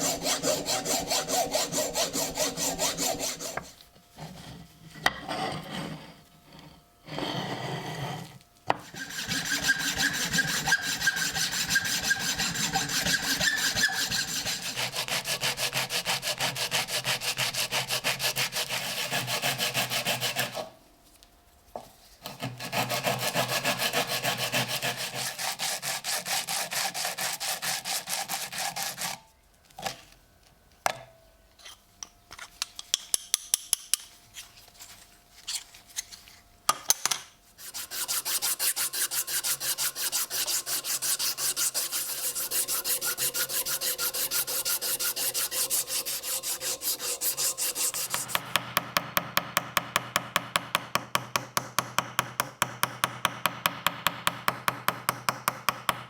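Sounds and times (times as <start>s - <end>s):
hand tool rasping: 0.0s - 3.8s, 8.8s - 20.6s, 37.6s - 48.4s.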